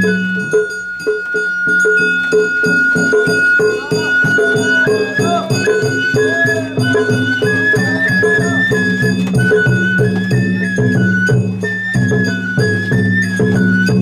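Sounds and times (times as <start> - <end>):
bamboo flute melody: 0.0 - 14.0
drum beats: 0.0 - 14.0
metallic ringing: 0.0 - 14.0.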